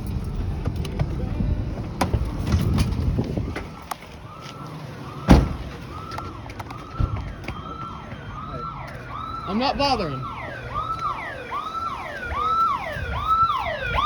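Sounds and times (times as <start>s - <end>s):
truck engine and road noise: 0.0s - 14.0s
emergency siren wailing: 3.1s - 14.0s
loud thump: 5.3s - 5.8s.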